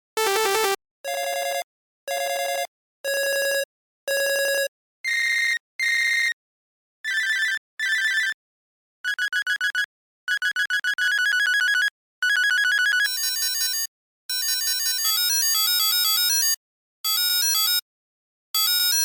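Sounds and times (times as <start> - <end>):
electronic phone ringtone beeps: 0.2 - 0.8.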